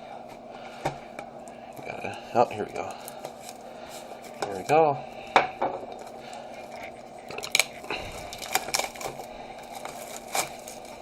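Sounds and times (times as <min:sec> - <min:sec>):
knife tearing plastic wrap: 0:07.3 - 0:11.0.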